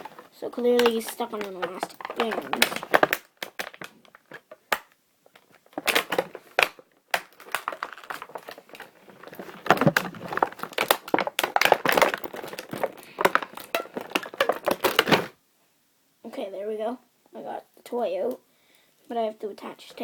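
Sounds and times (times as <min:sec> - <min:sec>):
toy packaging crinkling and rattling: 0:00.0 - 0:15.4.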